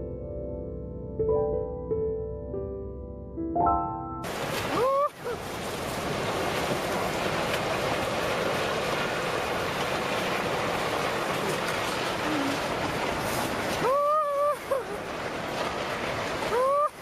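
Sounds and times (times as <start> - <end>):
steady rushing noise: 4.2 - 17.0.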